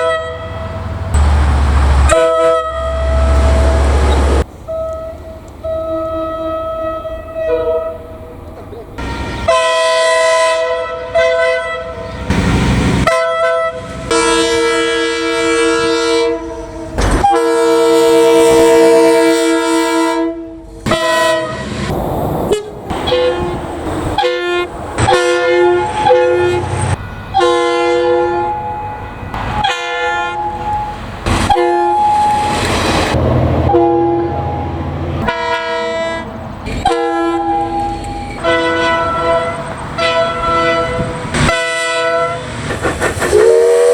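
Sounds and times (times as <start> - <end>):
train horn chord blasts: 2.0 - 4.0, 4.7 - 8.4, 9.0 - 12.2, 13.0 - 21.9, 24.2 - 30.9, 33.5 - 42.6, 43.3 - 43.9.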